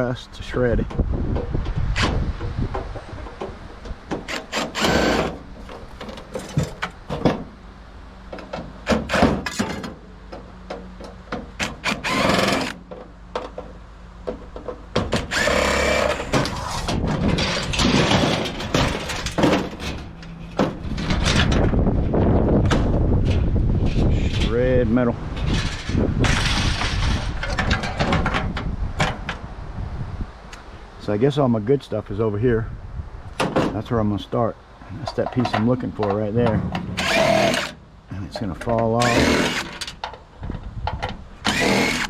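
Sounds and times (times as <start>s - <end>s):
metal knocking and clanking: 0.8s - 7.6s, 16.2s - 21.8s, 25.4s - 29.4s, 35.0s - 42.0s
power drill running: 4.3s - 5.4s, 11.7s - 12.8s, 15.3s - 16.4s, 37.0s - 37.8s, 39.0s - 39.9s, 41.4s - 42.0s.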